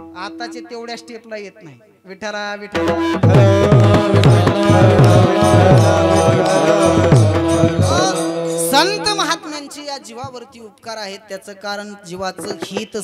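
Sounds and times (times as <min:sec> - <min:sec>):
steady held note: 0:03.2 - 0:09.3.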